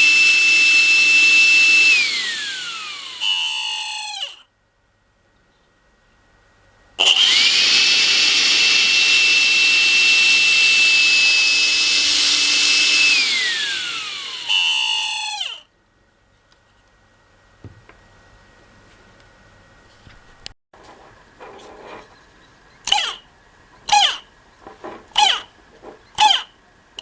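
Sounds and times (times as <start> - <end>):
vacuum motor whine: 0.0 - 4.4, 7.0 - 15.6.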